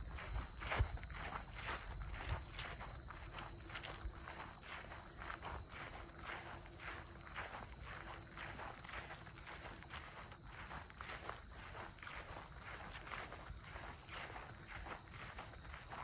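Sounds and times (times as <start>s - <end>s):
crickets trilling: 0.0s - 16.0s
crunching footsteps: 0.0s - 16.0s.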